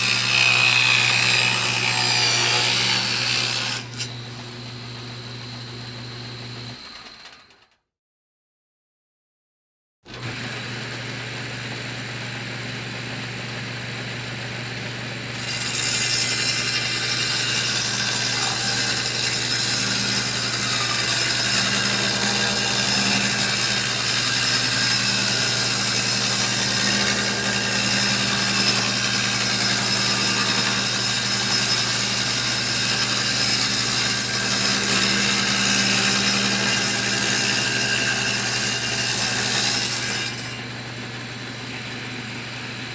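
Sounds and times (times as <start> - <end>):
electric saw cutting: 0.0 - 7.7, 10.1 - 12.6, 15.3 - 42.8.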